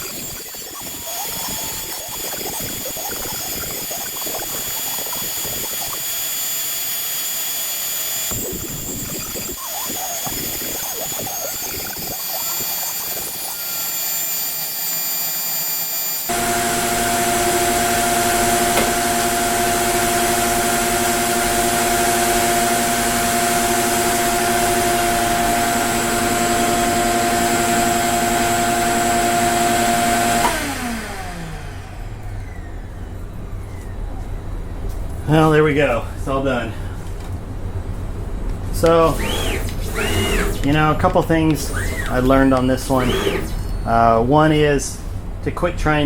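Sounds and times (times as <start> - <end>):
louder motor running: 0.0 - 32.4, 39.1 - 40.6
machinery motor whining: 0.0 - 35.2, 38.7 - 43.9.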